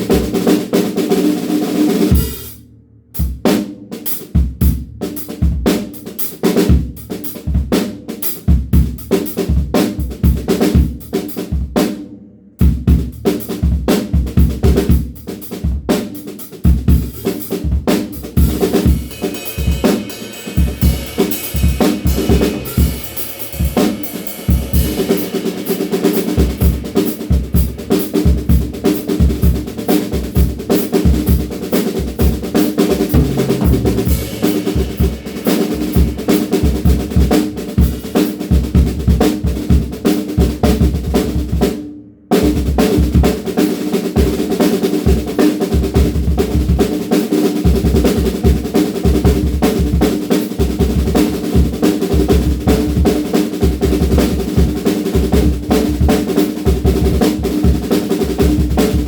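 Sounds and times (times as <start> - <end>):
snare drum: 0.0 - 2.6, 12.6 - 41.8, 42.4 - 59.0
cymbals: 1.6 - 2.6, 18.2 - 38.6
bass drum: 2.1 - 3.5, 16.7 - 41.6
sustained drum ring: 18.5 - 29.7, 32.6 - 38.1.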